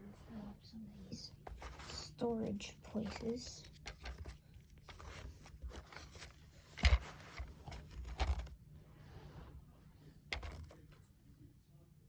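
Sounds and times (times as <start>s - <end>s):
plastic parts scraping and rattling: 1.4s - 8.6s, 10.3s - 10.8s.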